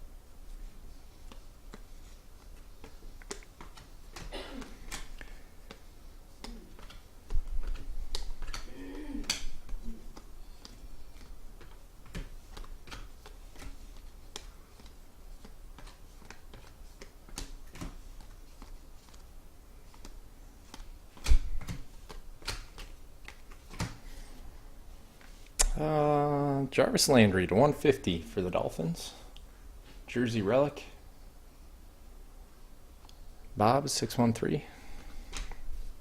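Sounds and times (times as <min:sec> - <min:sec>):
cards clicking and tapping: 0:01.3 - 0:24.1.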